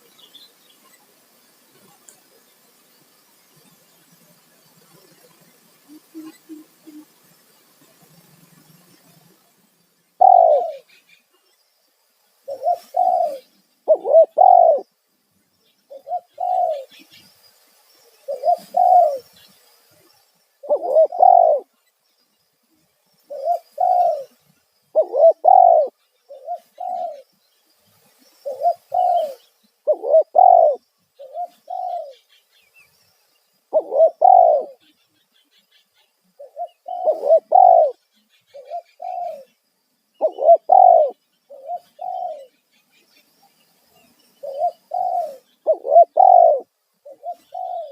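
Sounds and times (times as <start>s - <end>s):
dove cooing: 5.8s - 7.2s, 10.2s - 10.9s, 12.5s - 14.9s, 15.9s - 17.0s, 18.3s - 19.3s, 20.6s - 21.7s, 23.3s - 27.3s, 28.4s - 32.2s, 33.7s - 34.8s, 36.4s - 39.5s, 40.2s - 42.5s, 44.4s - 47.9s.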